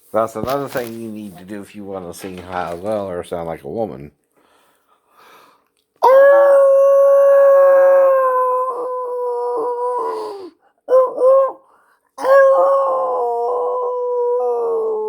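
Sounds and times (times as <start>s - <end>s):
man imitating wolf howl: 6.0s - 11.6s, 12.2s - 15.0s.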